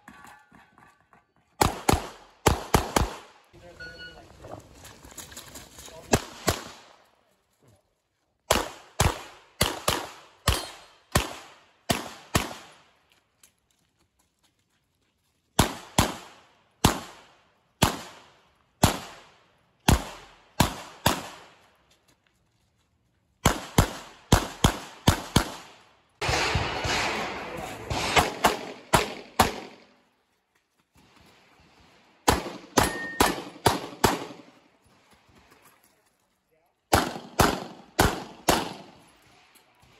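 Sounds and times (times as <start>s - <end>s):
pistol shots: 1.6s - 3.3s, 8.5s - 12.8s, 15.6s - 21.5s, 23.4s - 29.9s, 32.2s - 34.6s, 36.9s - 39.0s.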